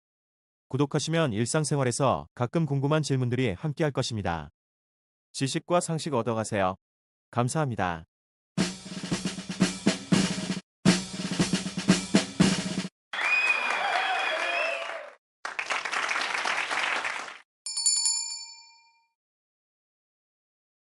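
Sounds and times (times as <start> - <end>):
snare drum roll: 8.6 - 12.9
crowd cheering and applause: 13.1 - 17.4
bell ding: 17.7 - 19.2.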